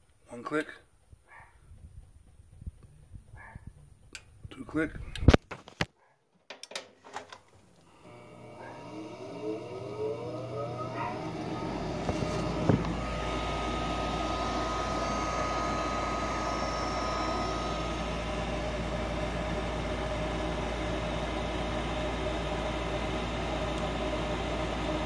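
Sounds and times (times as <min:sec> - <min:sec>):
blower motor humming: 0:07.7 - 0:25.0.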